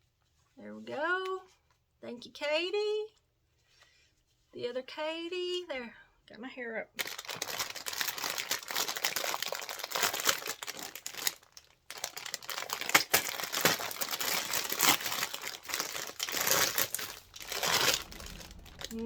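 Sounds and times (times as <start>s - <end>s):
wrapping paper crinkling: 7.0s - 19.0s.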